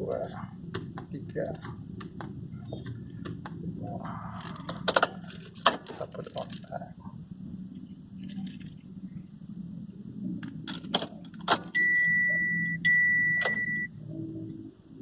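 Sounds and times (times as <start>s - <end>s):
car warning chime beeps: 11.7s - 14.3s.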